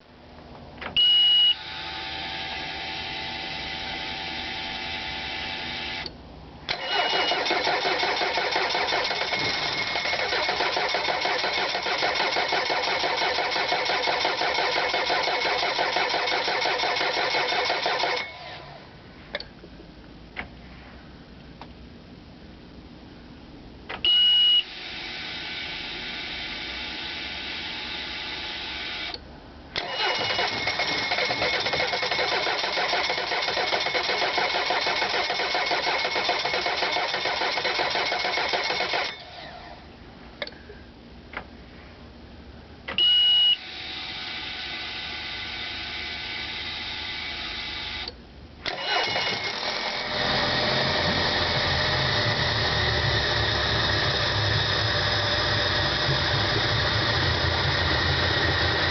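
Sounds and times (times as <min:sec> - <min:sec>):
steady electrical hum: 0:00.0 - 0:14.0, 0:18.2 - 0:34.6, 0:38.7 - 0:48.7
short high beep: 0:01.0 - 0:01.6, 0:06.8 - 0:07.4, 0:24.1 - 0:24.7, 0:43.0 - 0:43.6
outboard starter cranking: 0:06.7 - 0:18.2, 0:29.8 - 0:39.1, 0:48.7 - 0:58.9.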